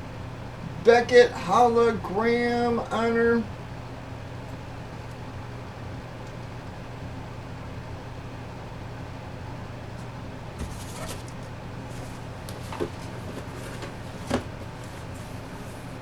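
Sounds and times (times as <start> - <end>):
steady low hum: 0.0 - 16.0
packaging rustling: 10.6 - 16.0.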